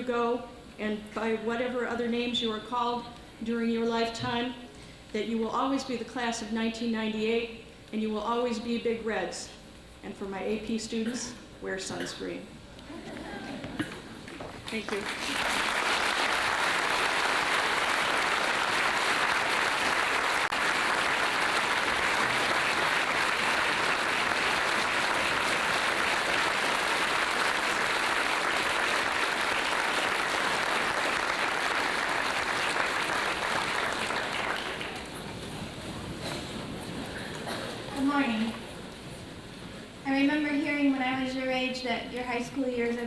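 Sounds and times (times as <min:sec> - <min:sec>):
audience applauding: 0:14.3 - 0:37.4.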